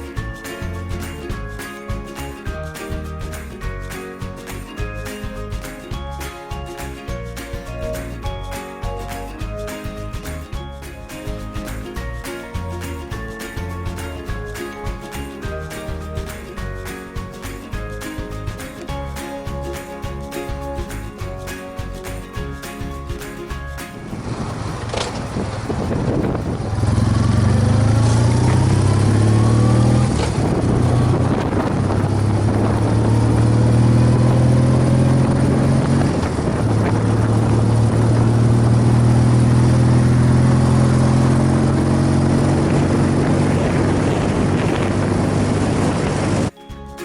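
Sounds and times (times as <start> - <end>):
wind and road noise: 0.0 - 46.6
motorcycle engine running: 23.6 - 46.5.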